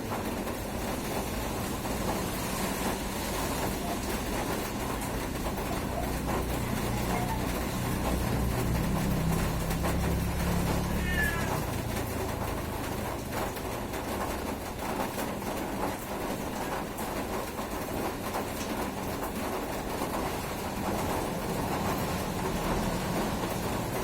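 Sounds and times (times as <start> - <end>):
low engine rumble: 0.0 - 15.1, 19.8 - 24.0
steady rain falling: 0.0 - 24.0
brief high call: 10.9 - 11.6.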